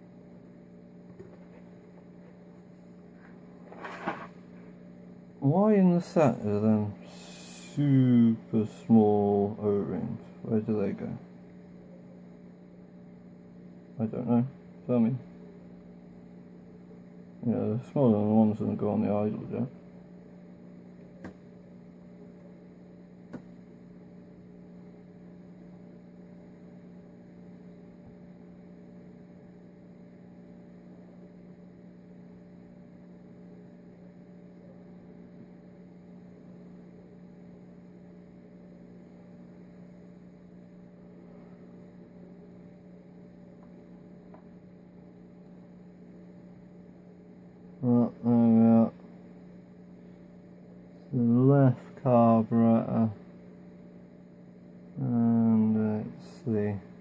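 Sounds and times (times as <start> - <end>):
low electrical hum: 0.0 - 57.0.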